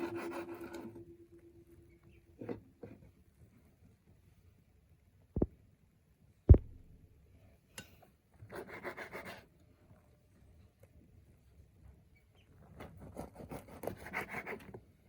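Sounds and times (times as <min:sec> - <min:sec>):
dull low thumps: 0:05.4 - 0:05.6, 0:06.5 - 0:07.0.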